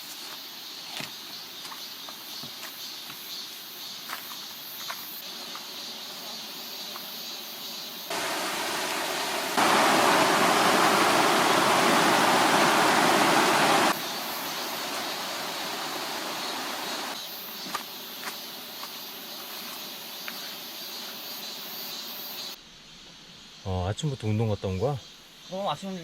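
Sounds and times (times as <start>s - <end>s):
water rushing over rocks: 8.1s - 17.2s.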